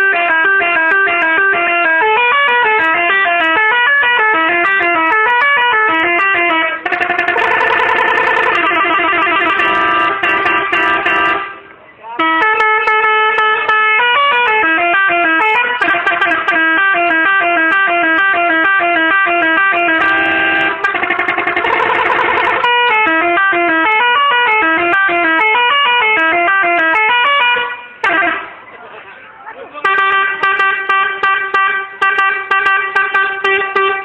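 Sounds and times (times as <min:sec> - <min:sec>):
multi-tone musical horn: 0:00.0 - 0:28.6, 0:29.8 - 0:34.0.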